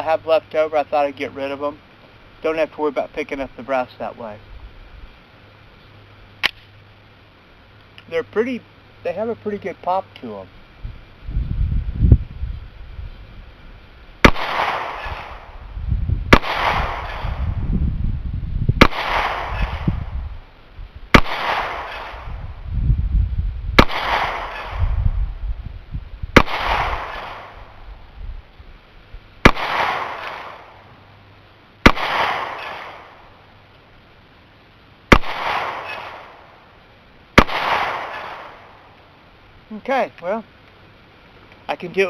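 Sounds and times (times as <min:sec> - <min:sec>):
pistol shots with echo: 0:14.2 - 0:15.5, 0:16.3 - 0:17.4, 0:18.8 - 0:19.9, 0:21.2 - 0:22.3, 0:23.8 - 0:24.8, 0:26.4 - 0:27.6, 0:29.4 - 0:30.8, 0:31.8 - 0:33.2, 0:35.1 - 0:36.4, 0:37.4 - 0:38.8.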